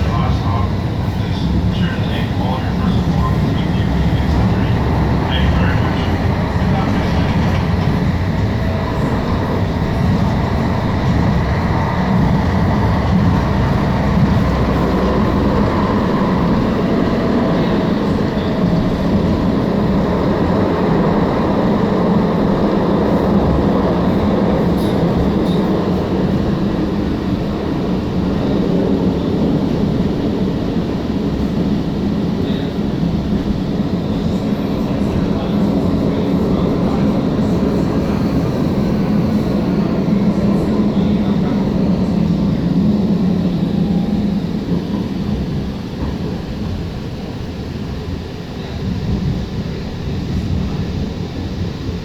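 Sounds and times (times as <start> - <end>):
train wheels rumbling on rail: 0.0 - 52.0.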